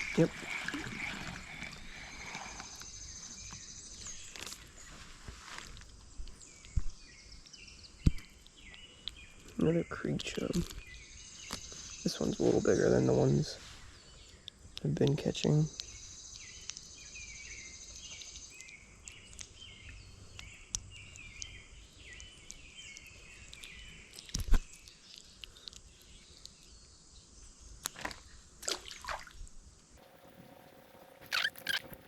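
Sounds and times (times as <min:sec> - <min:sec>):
songbird chirping: 0:00.0 - 0:32.0.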